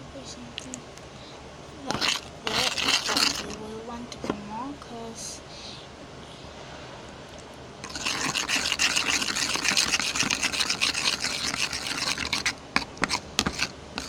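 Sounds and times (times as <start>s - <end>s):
spoon scraping in bowl: 1.8s - 3.6s, 7.8s - 14.0s.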